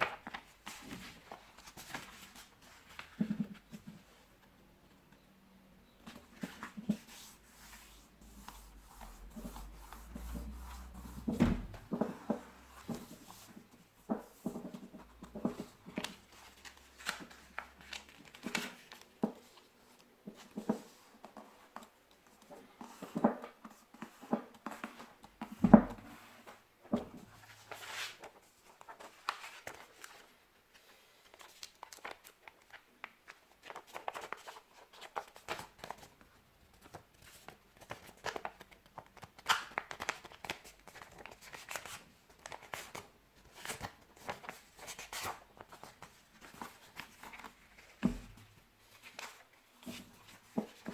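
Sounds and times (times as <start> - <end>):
paper being folded and creased: 6.0 - 19.7, 27.6 - 36.2, 36.8 - 48.1, 48.8 - 50.9.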